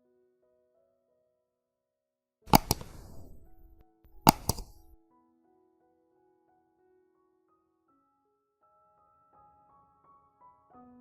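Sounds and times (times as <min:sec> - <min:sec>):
sharp clicks: 0:02.5 - 0:05.0
soft background music: 0:02.5 - 0:11.0.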